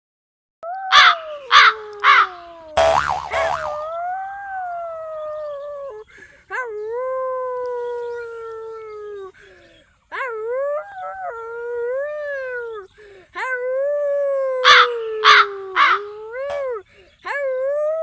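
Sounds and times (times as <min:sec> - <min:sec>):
dog howling: 0:00.7 - 0:02.6, 0:14.3 - 0:16.8.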